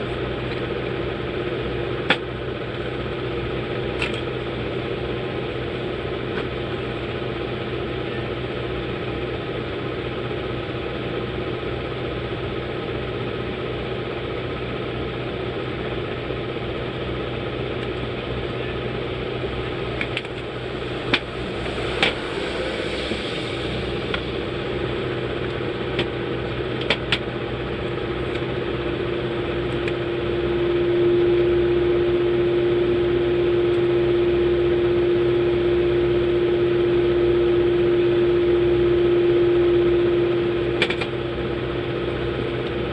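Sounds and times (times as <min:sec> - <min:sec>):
small motor humming: 0:18.6 - 0:42.9.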